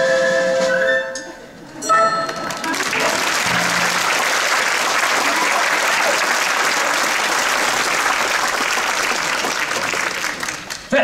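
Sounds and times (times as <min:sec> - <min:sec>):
audience applauding: 0:02.2 - 0:10.9.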